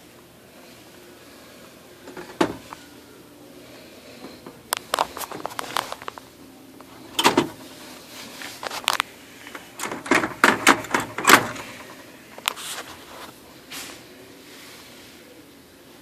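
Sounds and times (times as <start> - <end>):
printer mechanism grinding: 6.9 - 7.8, 8.6 - 12.8
clicks and knocks: 9.8 - 12.5.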